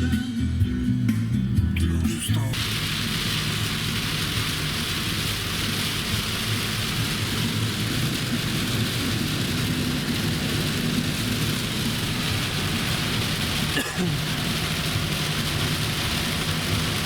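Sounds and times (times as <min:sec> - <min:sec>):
road noise inside vehicle: 0:00.8 - 0:17.0.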